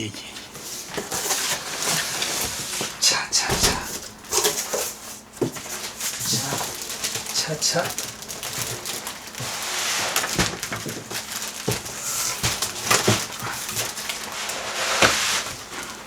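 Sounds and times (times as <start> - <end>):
cardboard rustling and scraping: 0.5 - 16.0.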